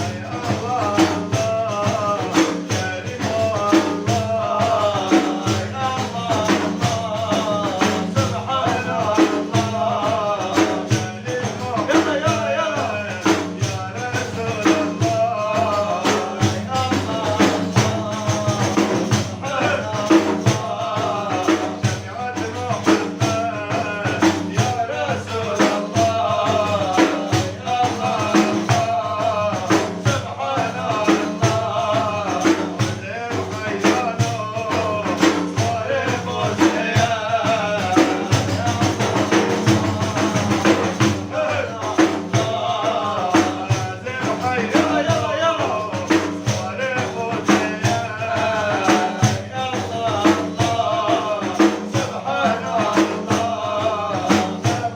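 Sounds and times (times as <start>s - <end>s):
frame drums with jingles: 0.0s - 54.9s
man singing: 0.0s - 54.9s.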